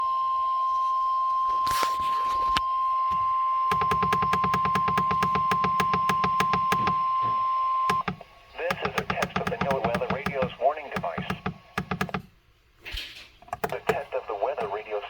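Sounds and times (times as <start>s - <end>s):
high warning alarm tone: 2.3s - 12.2s
rapid clicking buzz: 3.7s - 7.1s, 7.9s - 12.4s, 13.5s - 14.8s.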